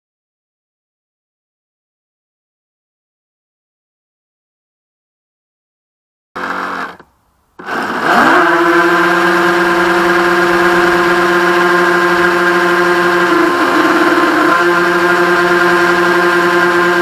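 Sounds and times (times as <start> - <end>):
electric motor high whine: 6.4 - 7.0, 7.6 - 17.0.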